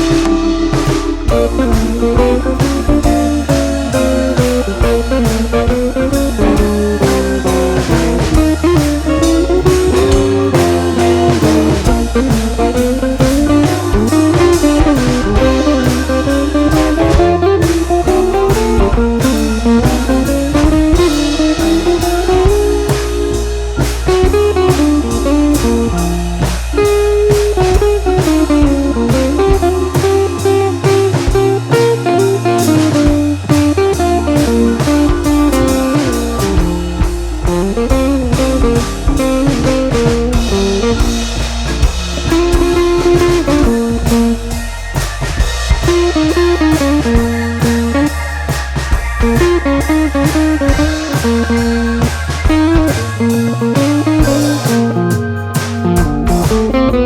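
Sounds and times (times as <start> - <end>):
drum kit beat: 0.0 - 57.0
electric guitar line: 0.0 - 57.0.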